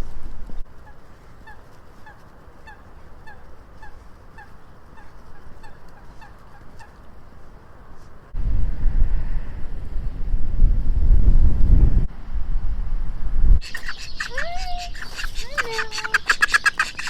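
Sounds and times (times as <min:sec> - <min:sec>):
wind buffeting microphone: 0:00.0 - 0:01.6, 0:08.2 - 0:17.0
low rush of wind: 0:00.0 - 0:17.0
geese honking: 0:00.8 - 0:07.2, 0:13.6 - 0:17.0.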